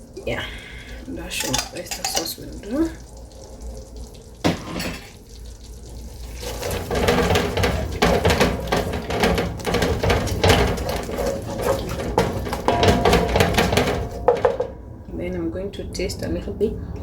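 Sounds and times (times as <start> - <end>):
spoon stirring sauce in pan: 6.3 - 14.8.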